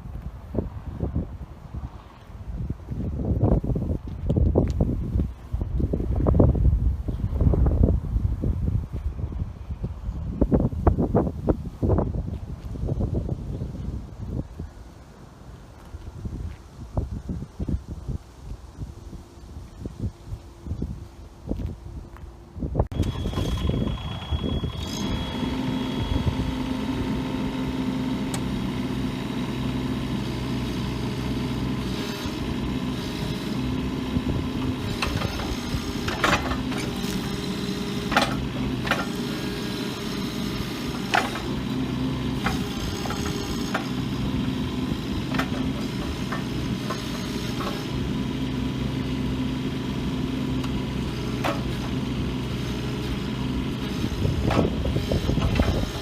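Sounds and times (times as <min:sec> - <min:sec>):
diesel engine running: 0:22.9 - 0:56.0.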